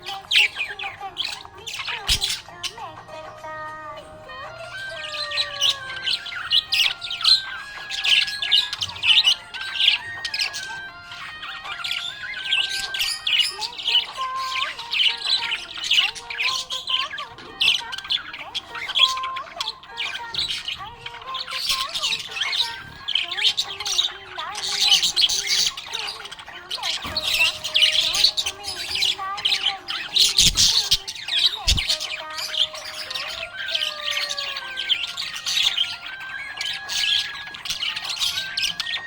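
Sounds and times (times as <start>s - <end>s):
background melody: 0.0s - 39.0s
budgerigar chirping and squawking: 0.0s - 39.0s.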